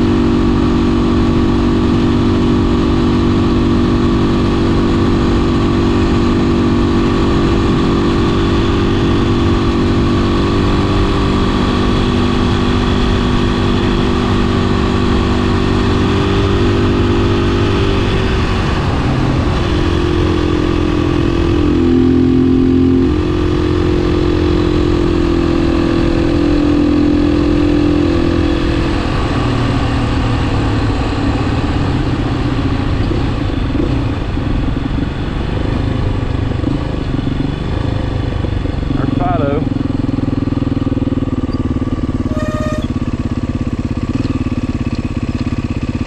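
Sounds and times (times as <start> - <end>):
motorcycle engine running: 0.0 - 46.0.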